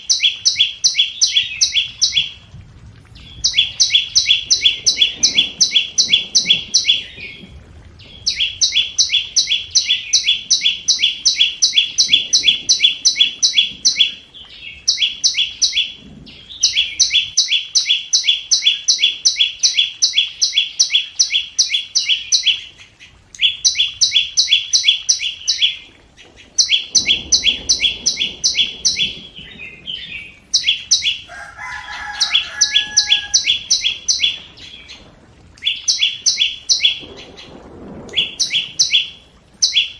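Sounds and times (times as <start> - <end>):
bird call high ticking notes: 0.0 - 2.4, 8.3 - 14.2, 14.8 - 16.0, 30.6 - 34.4, 38.4 - 39.9
lower drawn-out bird call: 31.1 - 34.3.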